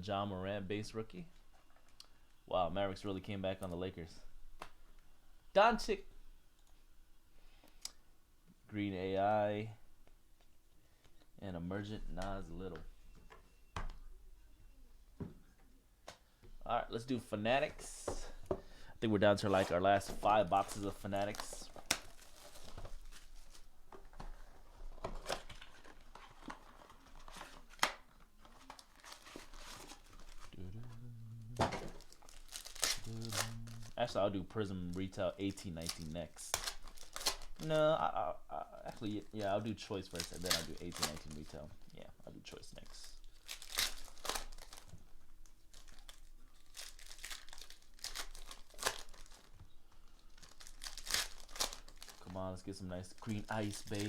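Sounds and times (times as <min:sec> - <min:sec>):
packaging rustling and crinkling: 0:19.4 - 0:30.6, 0:31.6 - 0:34.2, 0:35.8 - 0:37.9, 0:38.9 - 0:42.1, 0:42.8 - 0:54.0.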